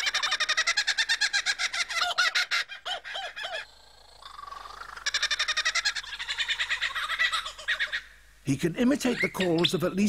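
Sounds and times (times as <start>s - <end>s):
lyrebird singing mimicked birdsong: 8.8s - 10.0s.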